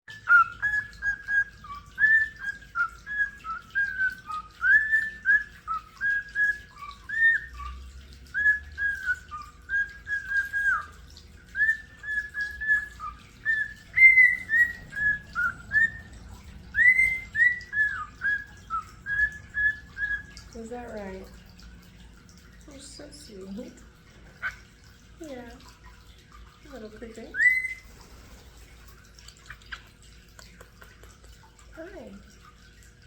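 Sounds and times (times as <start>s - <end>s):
cockatiel whistling: 0.2s - 11.0s, 11.6s - 16.0s, 16.7s - 20.4s, 27.4s - 27.9s.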